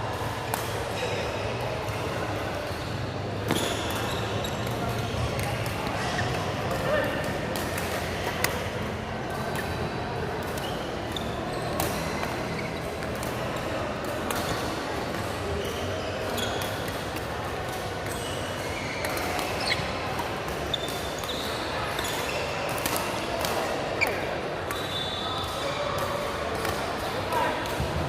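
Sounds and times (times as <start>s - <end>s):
court shoes squeaking: 0.2s - 28.0s
rackets striking shuttlecock: 3.4s - 15.4s.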